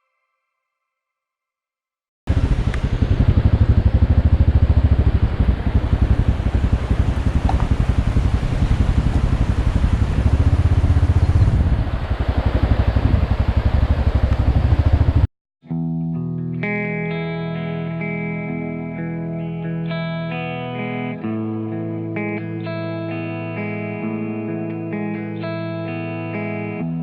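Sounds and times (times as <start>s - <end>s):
motorcycle engine running: 2.3s - 15.3s.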